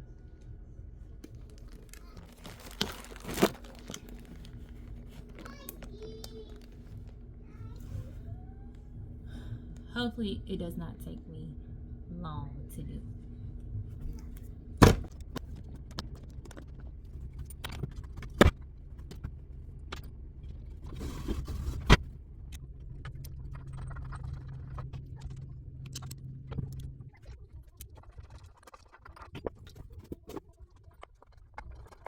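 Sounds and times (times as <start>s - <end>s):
steady low hum: 0.0s - 30.7s
clatter of objects being moved: 1.2s - 8.2s, 13.9s - 22.2s, 22.9s - 32.0s.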